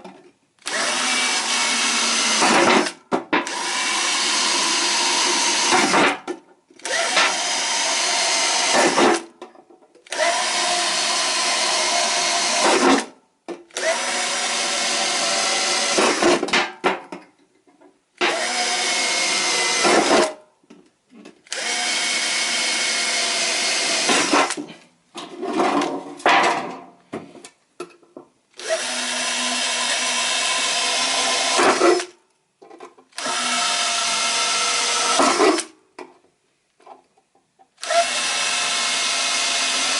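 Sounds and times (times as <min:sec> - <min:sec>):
electric drill on metal can: 0:00.7 - 0:06.2, 0:06.8 - 0:09.2, 0:10.1 - 0:13.1, 0:13.8 - 0:16.4, 0:18.2 - 0:20.4, 0:21.5 - 0:24.6, 0:28.6 - 0:32.1, 0:33.2 - 0:35.7, 0:37.8 - 0:39.9.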